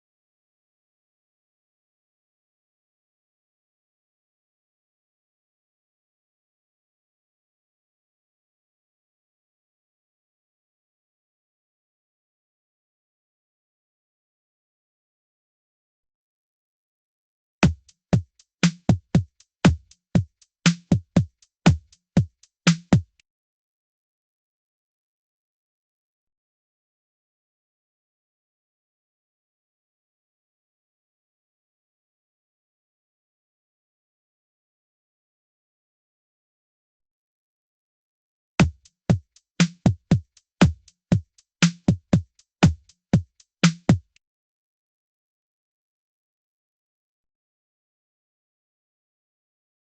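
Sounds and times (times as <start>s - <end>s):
drum machine beat: 17.6s - 23.2s, 38.6s - 44.2s.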